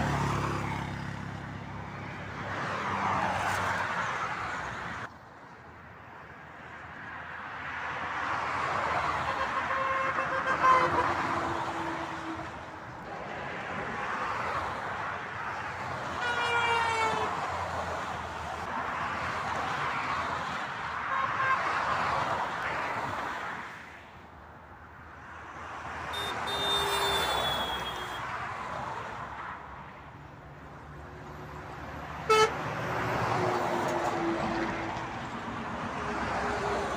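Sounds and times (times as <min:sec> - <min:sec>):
motorway traffic passing: 0:00.0 - 0:36.9
vehicle horns: 0:09.1 - 0:12.6, 0:16.1 - 0:17.4, 0:21.0 - 0:21.9, 0:26.1 - 0:28.4, 0:32.2 - 0:32.7.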